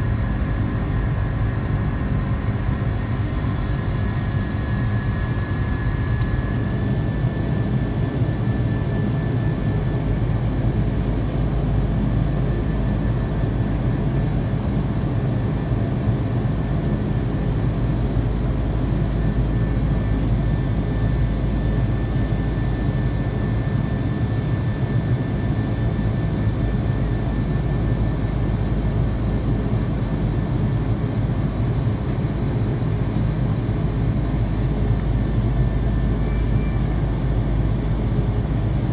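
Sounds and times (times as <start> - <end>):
jet engines rumbling: 0.0 - 15.3.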